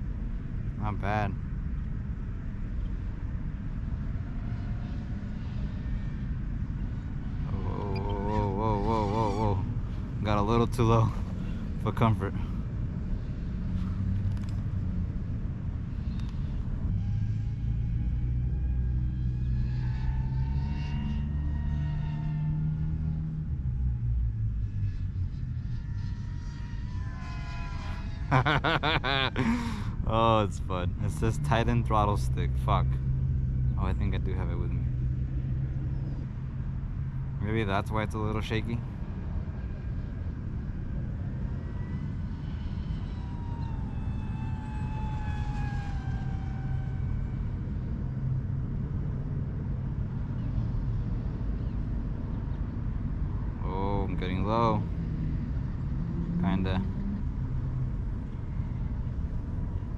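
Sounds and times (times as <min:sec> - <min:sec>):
low rumble: 0:00.0 - 0:59.9
drone propellers whining: 0:04.9 - 0:14.6, 0:24.6 - 0:31.9, 0:39.0 - 0:51.9.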